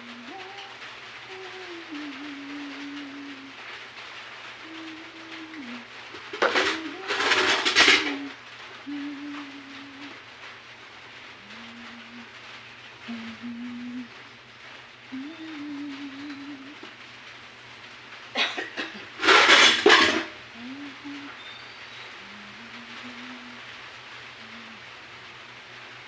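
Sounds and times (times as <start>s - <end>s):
dove cooing: 0.0s - 10.3s, 11.2s - 17.7s, 18.4s - 25.2s
dishes and pots clattering: 5.6s - 8.4s, 18.4s - 20.4s.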